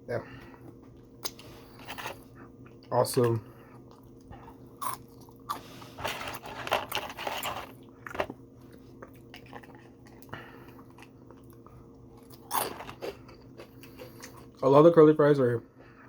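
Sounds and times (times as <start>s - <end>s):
faint steady hum: 0.0s - 16.0s
crunching and chewing food: 0.2s - 15.0s.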